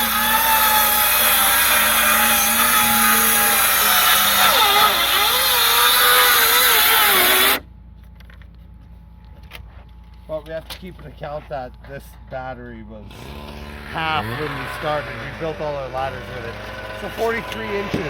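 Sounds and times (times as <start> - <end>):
circular saw cutting wood: 0.0 - 7.6, 13.1 - 18.0.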